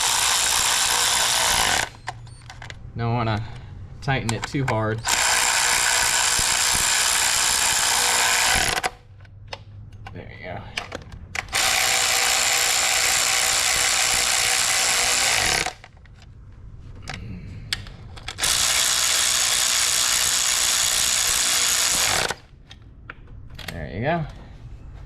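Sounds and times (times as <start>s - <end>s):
electric ratchet running: 0.0s - 2.2s, 5.0s - 9.0s, 11.5s - 15.9s, 18.3s - 22.5s.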